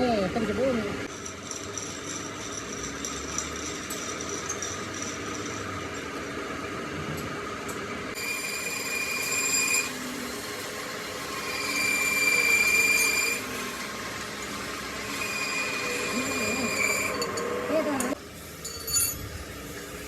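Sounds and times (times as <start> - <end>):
high cutter whine: 8.1 - 18.2
metal-cutting machine running: 8.1 - 18.2.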